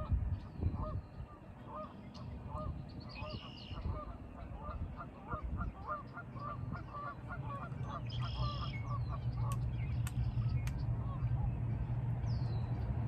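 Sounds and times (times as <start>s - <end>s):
high songbird call: 0.0s - 12.9s
geese honking: 0.8s - 9.6s.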